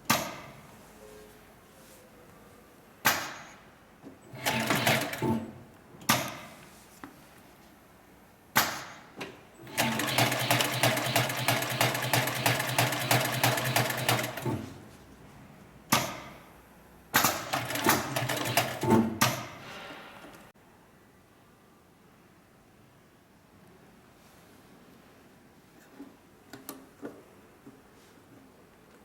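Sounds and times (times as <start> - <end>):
sewing machine clacks: 4.3 - 5.4, 9.6 - 14.6, 17.2 - 19.4
sewing machine stitching: 4.3 - 5.5, 9.6 - 14.7, 17.2 - 19.3.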